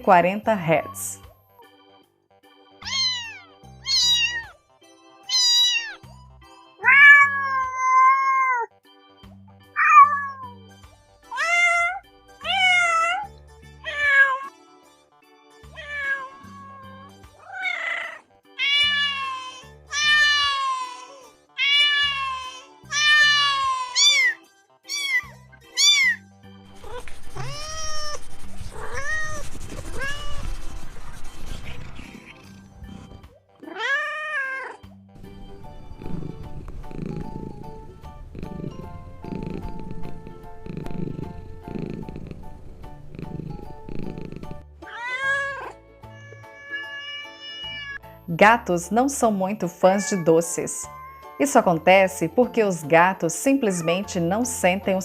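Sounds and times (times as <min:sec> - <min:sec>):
soft background music: 0:00.0 - 0:55.0
cats meowing: 0:02.8 - 0:04.6, 0:05.2 - 0:06.1, 0:06.8 - 0:08.8, 0:09.7 - 0:10.6, 0:11.2 - 0:14.6, 0:15.7 - 0:30.6, 0:33.6 - 0:35.4, 0:44.4 - 0:48.0, 0:49.7 - 0:51.6.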